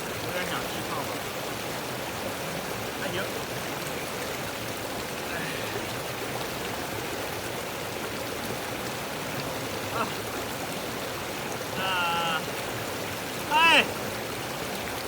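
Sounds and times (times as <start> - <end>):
creek water rushing: 0.0 - 15.0
brief voice: 13.5 - 14.0.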